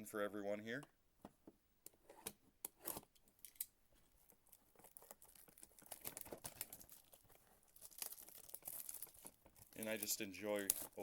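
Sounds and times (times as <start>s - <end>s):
plastic wrap crinkling: 4.1s - 11.0s.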